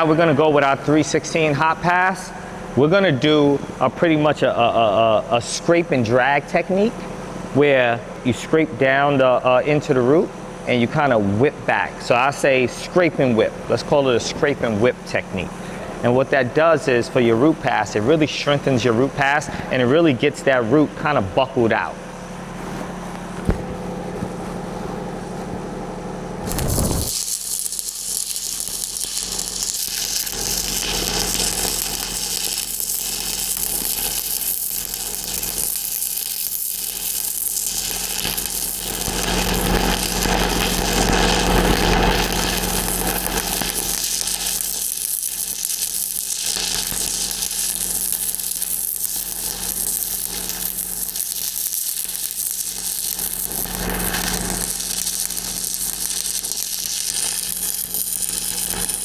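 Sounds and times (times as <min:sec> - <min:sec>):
welding arc crackling: 0:00.0 - 0:02.3, 0:22.1 - 0:59.0.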